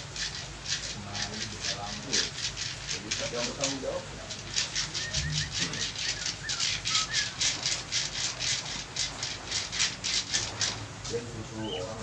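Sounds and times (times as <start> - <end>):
hands rubbing oiled skin: 0.0 - 10.9
small bird chirping: 4.3 - 10.8, 11.5 - 12.0.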